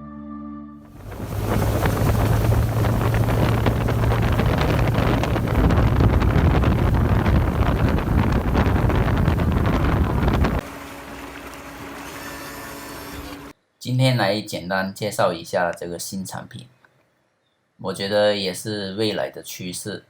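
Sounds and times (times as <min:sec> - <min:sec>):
wind buffeting on microphone: 0:00.9 - 0:10.6
rush of water and air: 0:00.9 - 0:12.2
electric motor low hum: 0:00.9 - 0:13.6.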